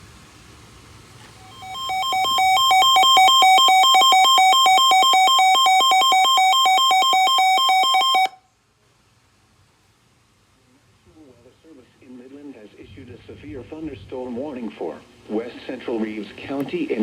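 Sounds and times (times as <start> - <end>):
two-pitch emergency alert tone: 1.4 - 8.4.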